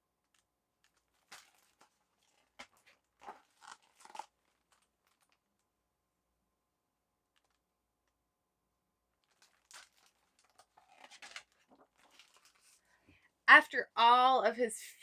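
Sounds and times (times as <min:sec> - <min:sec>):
book pages rustling: 0:00.8 - 0:05.4, 0:09.2 - 0:12.9.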